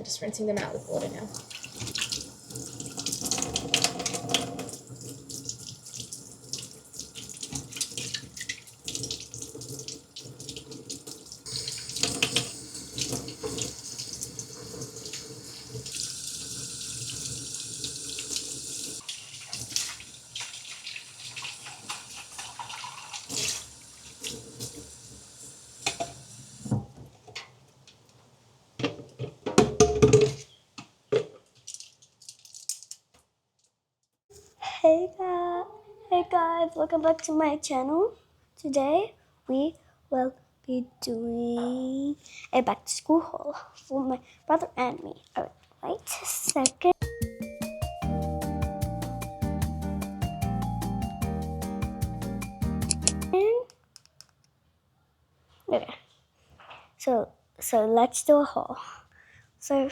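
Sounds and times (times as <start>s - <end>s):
tap water running into sink: 0.6s - 26.9s.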